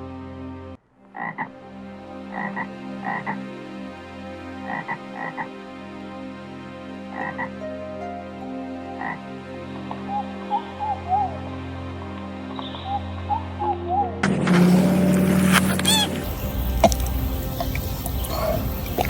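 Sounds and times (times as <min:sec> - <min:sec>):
animal calling in double notes: 0:15.4 - 0:19.0.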